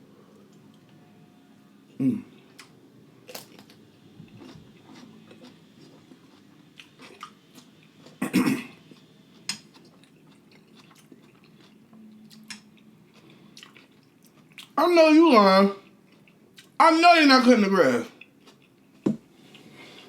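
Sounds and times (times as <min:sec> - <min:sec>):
chewing food: 0:03.3 - 0:08.2, 0:08.8 - 0:14.8, 0:15.8 - 0:16.8, 0:18.1 - 0:20.0.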